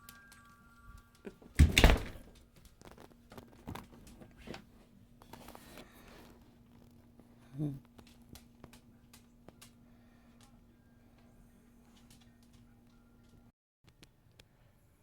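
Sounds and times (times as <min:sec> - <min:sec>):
faint low hum: 0:00.0 - 0:15.0
door shutting: 0:01.5 - 0:02.4.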